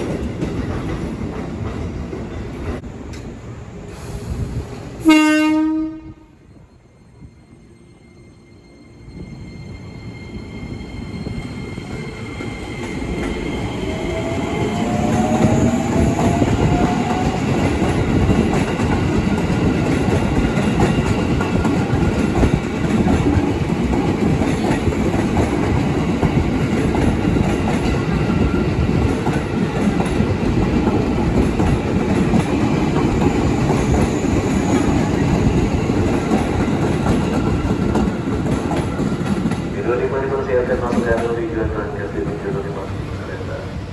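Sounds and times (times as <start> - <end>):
train wheels clattering over rails: 0.0 - 3.3, 11.9 - 39.8.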